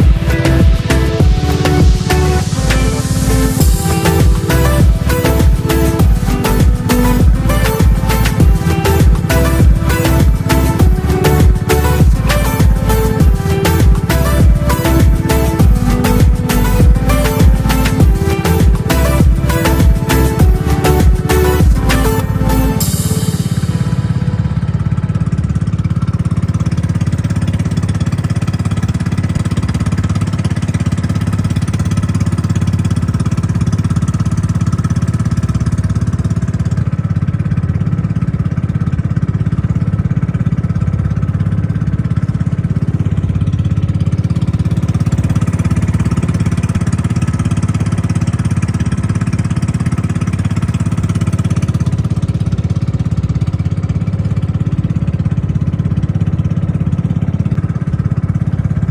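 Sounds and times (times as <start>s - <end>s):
small engine droning: 0.0s - 58.9s.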